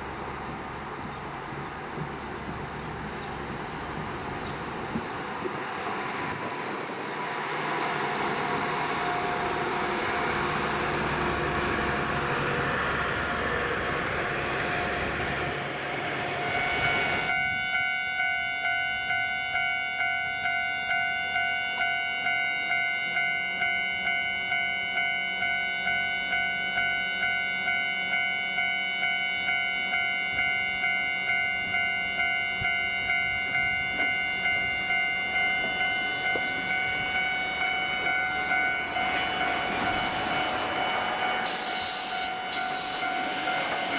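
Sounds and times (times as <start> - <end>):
level crossing bell ringing: 16.9 - 43.9.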